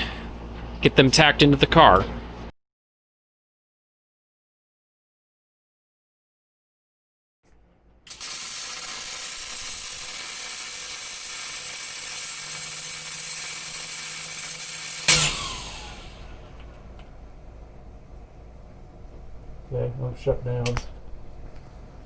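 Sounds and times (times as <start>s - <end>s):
welder arc crackling and hissing: 8.1s - 17.0s
loud sharp crack: 13.3s - 17.1s.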